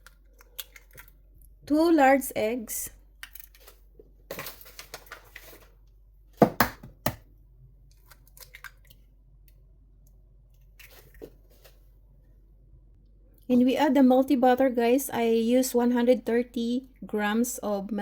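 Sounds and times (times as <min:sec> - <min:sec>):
eggshells cracking: 0:00.0 - 0:01.5.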